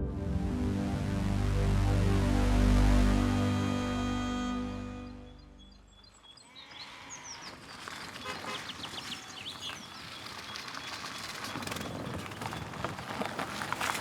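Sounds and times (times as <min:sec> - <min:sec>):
music: 0:00.0 - 0:05.9.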